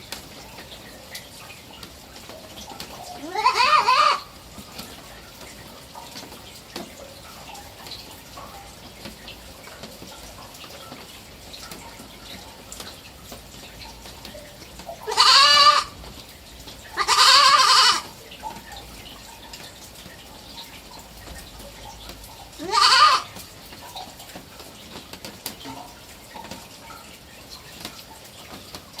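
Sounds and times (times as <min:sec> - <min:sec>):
young goat bleating: 0:03.2 - 0:04.2, 0:15.0 - 0:16.0, 0:17.0 - 0:18.1, 0:22.6 - 0:23.3.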